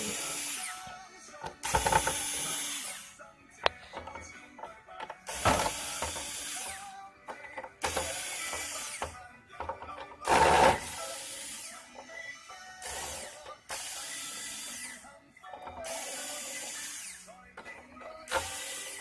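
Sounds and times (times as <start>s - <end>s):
electric screwdriver whirring: 0.0s - 0.9s, 1.5s - 3.1s, 5.3s - 7.0s, 7.8s - 9.2s, 10.2s - 11.9s, 12.8s - 15.1s, 15.7s - 17.3s, 18.1s - 19.0s.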